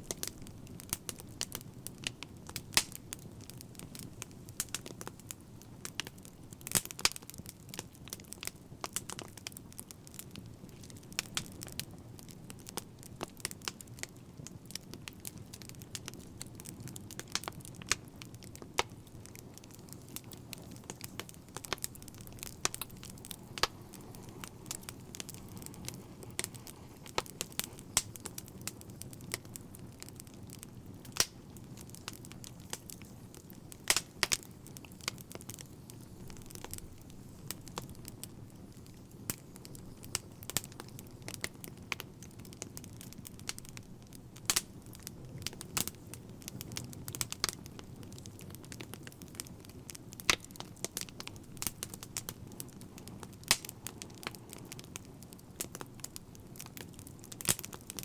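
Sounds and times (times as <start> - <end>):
fire pops and snaps: 0.0 - 58.0
wood fire crackling: 0.0 - 58.0
rush of flame: 19.0 - 39.4.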